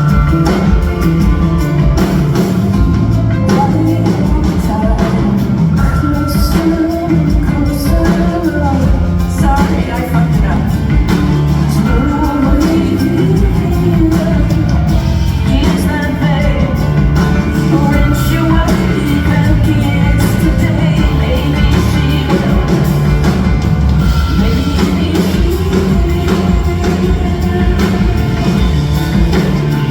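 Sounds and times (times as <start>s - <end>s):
drum beat: 0.0s - 29.9s
heavy bass line: 0.0s - 29.9s
woman singing: 0.0s - 29.9s.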